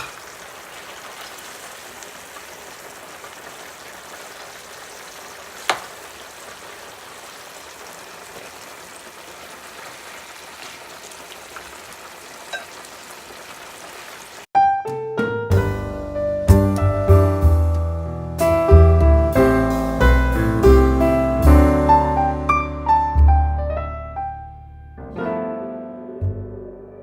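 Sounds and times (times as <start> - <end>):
food sizzling in a frying pan: 0.0 - 14.5
piano music: 14.6 - 27.0.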